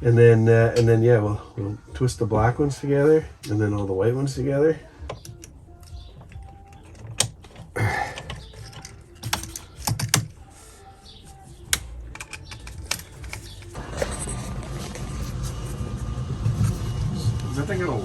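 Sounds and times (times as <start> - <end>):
wires being twisted by hand: 5.0 - 15.8.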